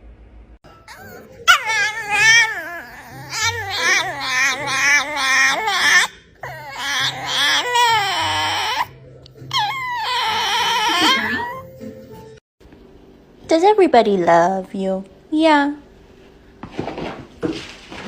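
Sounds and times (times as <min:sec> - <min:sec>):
dog whining and yowling: 0:00.7 - 0:11.8.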